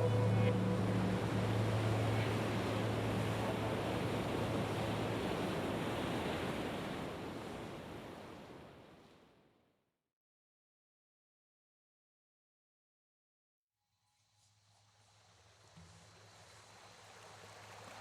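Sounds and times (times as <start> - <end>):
low hum: 0.0 - 5.3.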